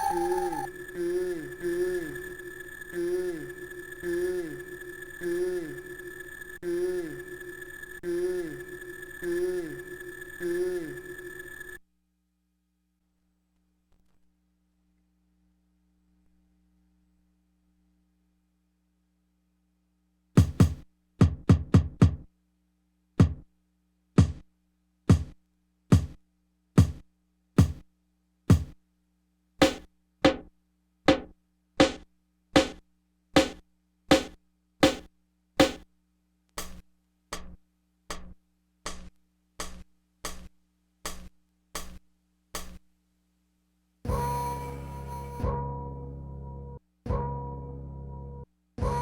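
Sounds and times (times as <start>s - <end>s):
sampled drum machine hits: 20.4s - 22.2s, 26.0s - 26.2s, 27.6s - 27.8s, 28.5s - 28.7s, 29.6s - 30.5s, 31.1s - 32.0s, 32.6s - 32.8s, 33.4s - 35.8s, 36.6s - 36.8s, 41.1s - 42.0s, 42.6s - 42.8s.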